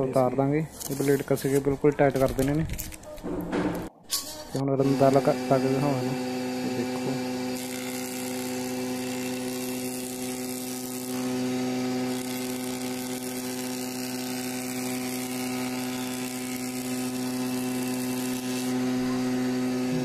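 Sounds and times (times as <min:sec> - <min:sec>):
electric planer running: 0:04.6 - 0:20.0.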